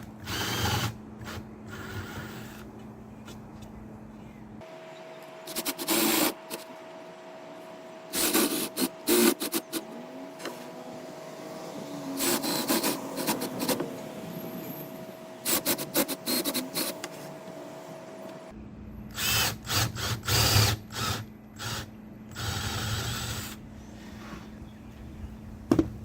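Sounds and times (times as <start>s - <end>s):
steady low hum: 0.0s - 26.0s
rasping woodworking tool: 12.1s - 13.9s.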